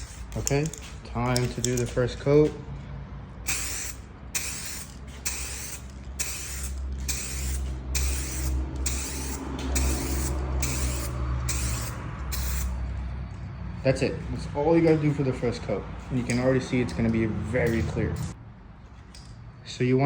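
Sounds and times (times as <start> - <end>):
aerosol can hissing: 3.5 - 12.8.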